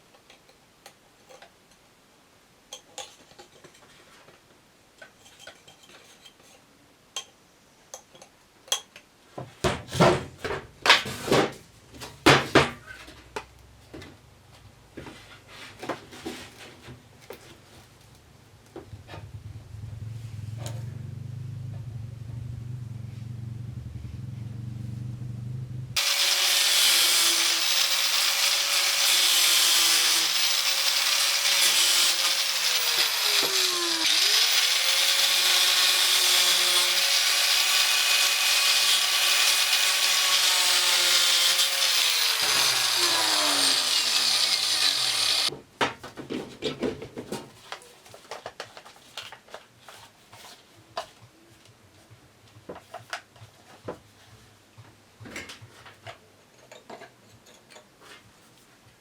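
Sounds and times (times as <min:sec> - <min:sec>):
small electric motor running: 0:26.0 - 0:45.5.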